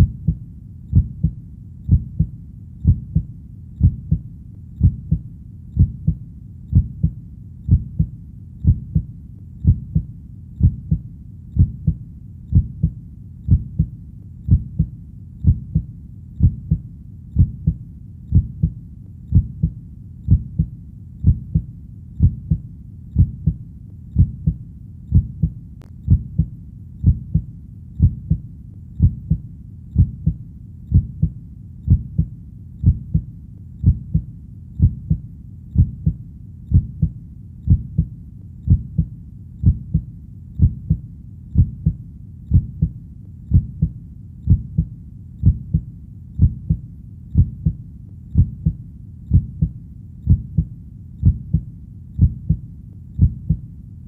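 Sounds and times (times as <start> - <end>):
heartbeat thumps: 0.0 - 53.7.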